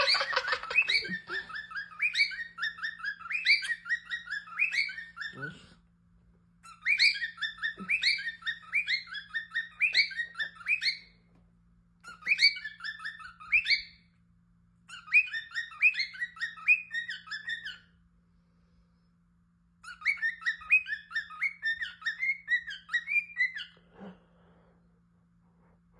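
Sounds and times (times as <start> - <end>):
bird chirping: 0.0 - 5.6, 6.6 - 11.3, 12.0 - 14.2, 14.8 - 18.0, 19.8 - 23.8.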